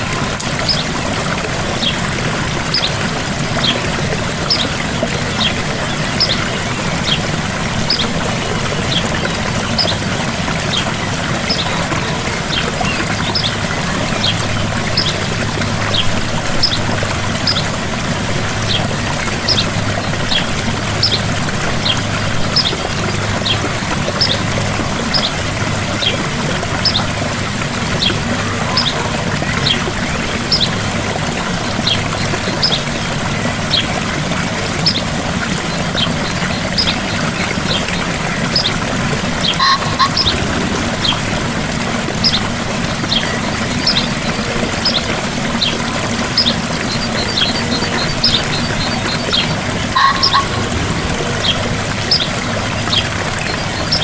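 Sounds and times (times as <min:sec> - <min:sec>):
waterfall splashing: 0:00.0 - 0:54.0
bird chirping: 0:39.5 - 0:40.4, 0:46.4 - 0:54.0.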